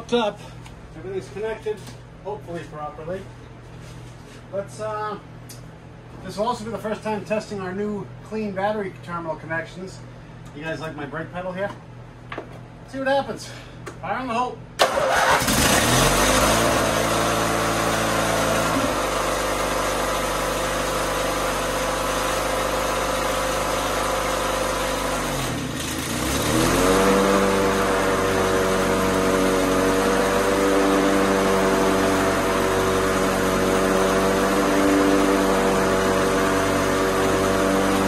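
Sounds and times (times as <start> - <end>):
riding mower engine running: 14.8 - 38.0.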